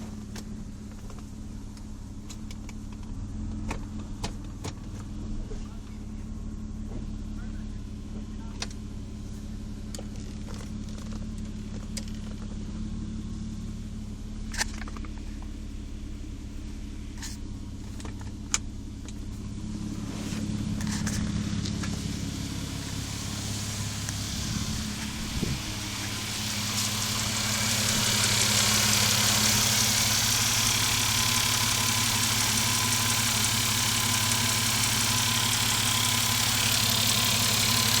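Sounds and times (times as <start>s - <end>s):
car engine running: 0.0s - 38.0s
faint steady whine: 13.6s - 38.0s
hissing noise: 20.0s - 31.2s.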